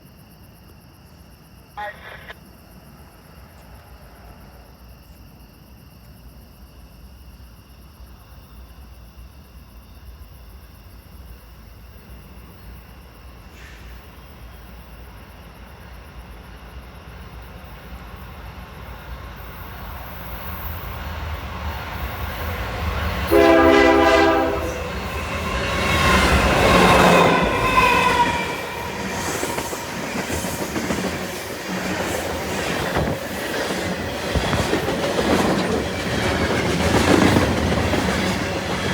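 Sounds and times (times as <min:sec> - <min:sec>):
train rumble: 0:10.8 - 0:38.9
locomotive horn blast: 0:23.3 - 0:29.2
wheels clattering over rails: 0:27.3 - 0:38.9.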